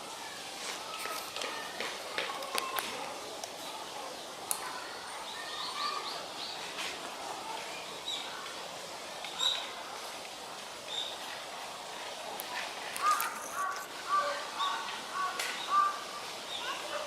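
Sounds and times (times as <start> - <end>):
steady background hiss: 0.0 - 17.0
small birds chirping: 3.5 - 6.9, 9.3 - 9.8, 10.9 - 11.4, 12.9 - 17.0.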